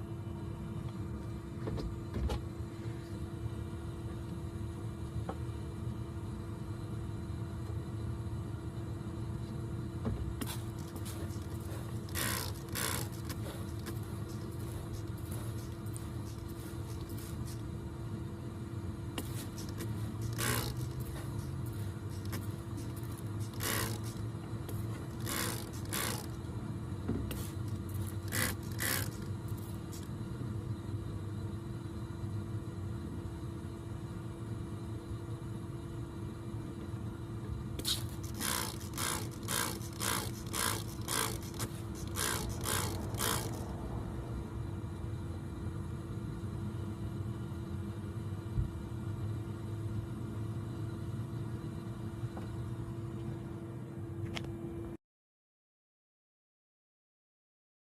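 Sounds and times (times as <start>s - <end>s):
short bursts of hiss: 10.4s - 17.6s, 19.2s - 26.3s, 27.3s - 30.1s, 37.8s - 43.6s
vacuum motor humming: 10.4s - 30.1s, 37.8s - 43.8s.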